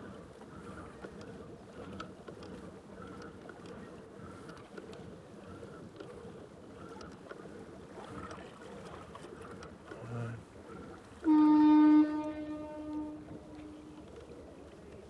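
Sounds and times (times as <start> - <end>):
wind: 0.0 - 15.0
rushing water: 7.8 - 15.0
loud horn blast: 11.2 - 14.0.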